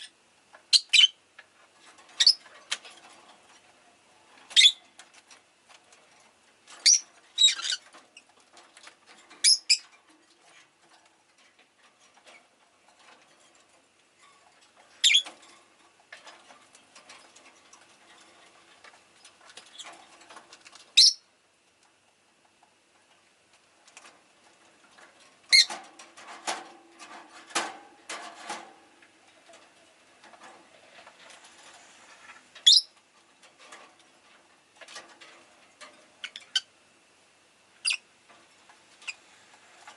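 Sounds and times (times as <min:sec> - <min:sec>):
small clicks and rustling: 0:01.3 - 0:36.6, 0:38.2 - 0:39.9
lovebird chirping: 0:21.0 - 0:21.2, 0:32.6 - 0:32.9.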